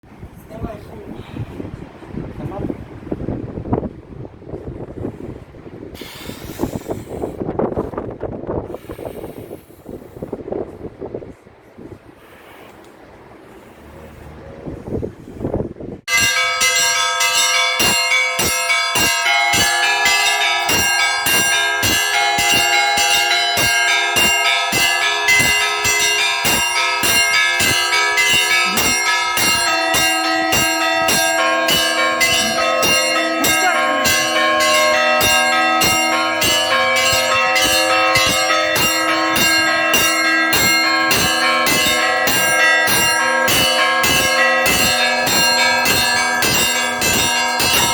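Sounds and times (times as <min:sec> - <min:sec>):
wind rumble on microphone: 0:00.0 - 0:16.4
church bells pealing: 0:16.1 - 0:47.9
deep bells ringing: 0:16.1 - 0:47.9.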